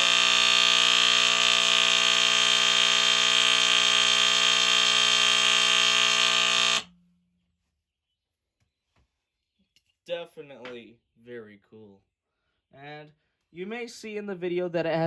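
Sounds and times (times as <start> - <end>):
smoke alarm horn tone: 0.0 - 6.9.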